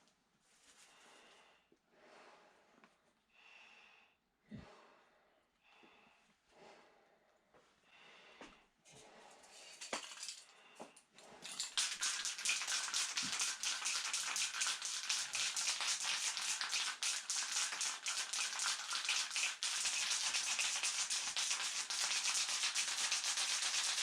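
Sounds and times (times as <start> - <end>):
spray can clicks and rattles: 11.4 - 24.0
spray paint can hissing: 11.6 - 24.0.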